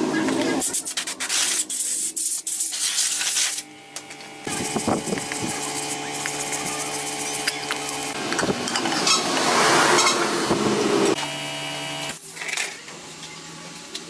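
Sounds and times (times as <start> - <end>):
small power tool humming: 3.6 - 8.8, 10.8 - 12.2.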